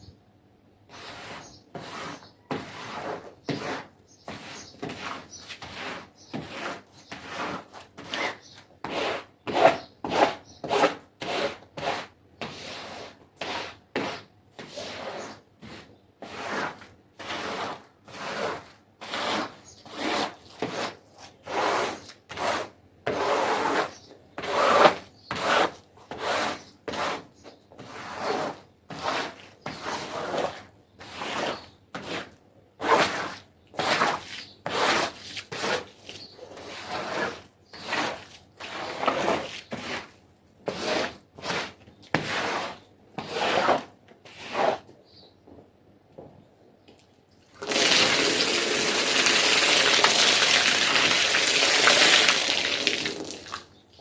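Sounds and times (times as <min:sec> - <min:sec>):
stiff brush scrubbing carpet: 0:00.9 - 0:40.1, 0:40.7 - 0:44.8, 0:47.6 - 0:53.4
spraying water: 0:47.6 - 0:53.6.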